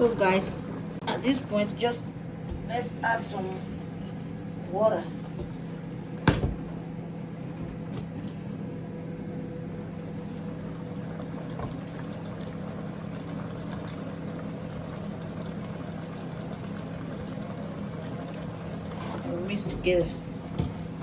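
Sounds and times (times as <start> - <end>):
water pouring into pot: 9.8 - 19.6.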